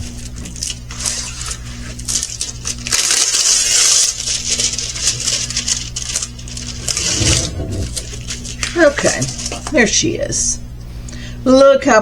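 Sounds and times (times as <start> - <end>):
plastic crinkling and rustling: 0.0 - 9.9.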